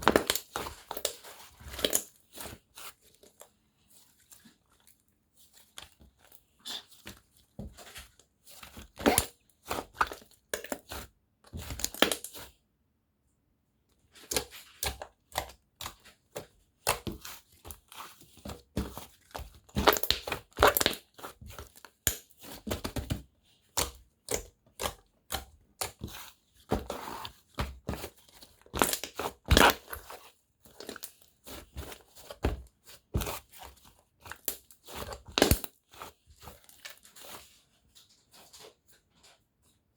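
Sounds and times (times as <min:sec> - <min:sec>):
slime popping and crackling: 0:19.8 - 0:21.0, 0:34.4 - 0:35.7.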